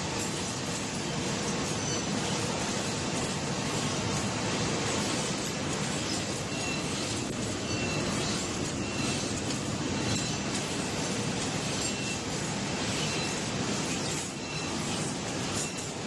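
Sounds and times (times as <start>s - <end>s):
grinding machine grinding metal: 0.0s - 16.0s
faint grinding squeal: 1.4s - 3.0s, 5.8s - 16.0s.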